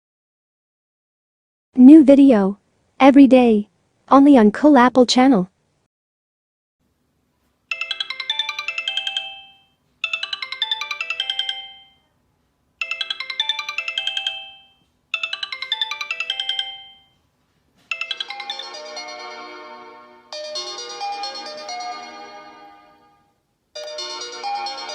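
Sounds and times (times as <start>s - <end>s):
electronic ringtone melody: 7.7s - 12.1s, 12.8s - 17.2s, 17.9s - 23.2s, 23.8s - 24.9s
different ringtone tune: 7.7s - 12.2s, 12.8s - 17.2s, 17.9s - 23.2s, 23.8s - 24.9s.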